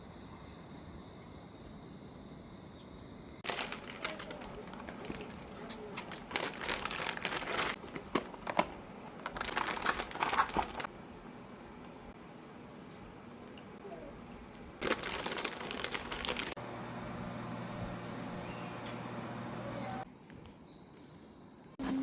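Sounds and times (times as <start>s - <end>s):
material crinkling and rustling: 3.4s - 10.9s, 14.8s - 16.6s.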